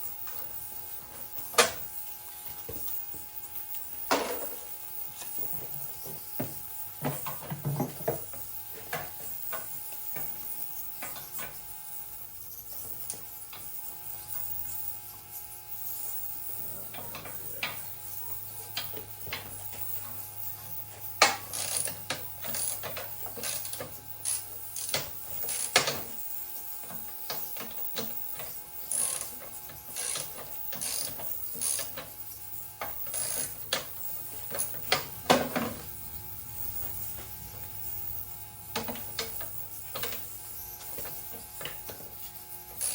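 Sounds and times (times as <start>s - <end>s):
ratchet wrench clicking: 21.1s - 26.3s, 27.2s - 42.1s.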